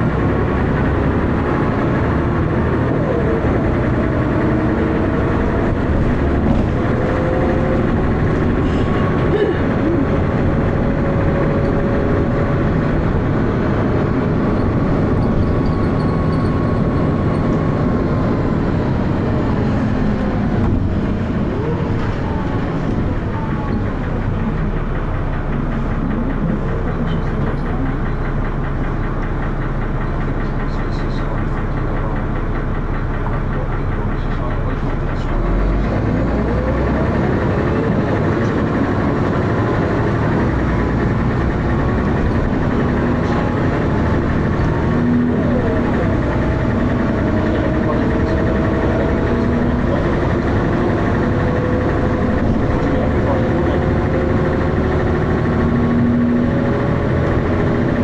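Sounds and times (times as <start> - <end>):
bus diesel engine: 0.0 - 58.0.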